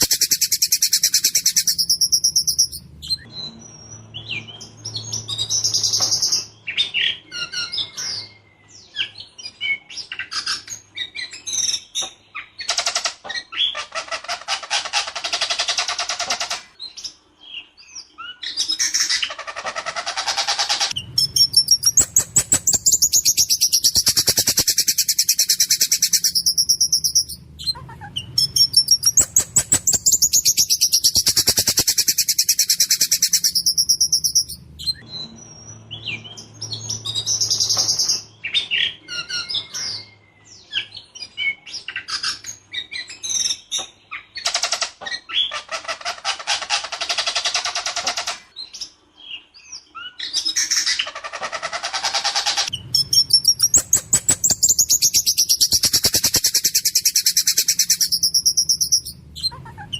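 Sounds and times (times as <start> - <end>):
bird singing rapid rolls: 0.0 - 12.7, 20.6 - 44.4, 52.6 - 59.9.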